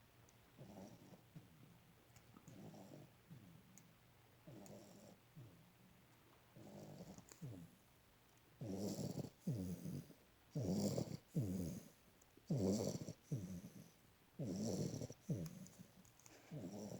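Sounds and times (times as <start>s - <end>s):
dog snoring: 0.6s - 1.6s, 2.4s - 3.6s, 4.4s - 5.6s, 6.6s - 7.8s, 8.6s - 16.9s.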